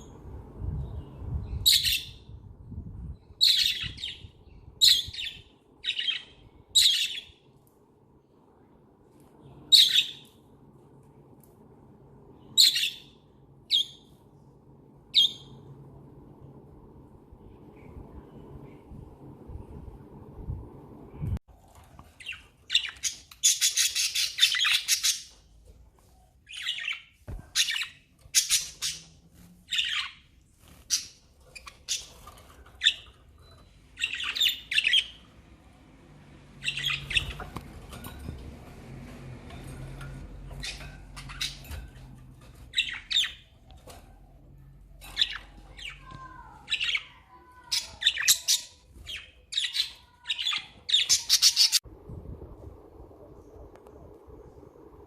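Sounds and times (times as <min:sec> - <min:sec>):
budgies chirping and squawking: 0:26.5 - 0:30.2, 0:30.8 - 0:35.2, 0:36.6 - 0:38.1, 0:40.0 - 0:44.1, 0:45.0 - 0:51.8.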